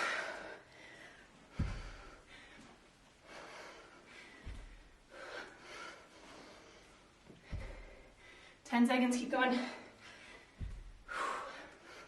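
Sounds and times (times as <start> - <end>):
woman breathing hard: 0.0 - 8.7, 9.5 - 12.0
kettlebell thudding: 1.5 - 2.2, 7.4 - 8.0, 10.5 - 11.2.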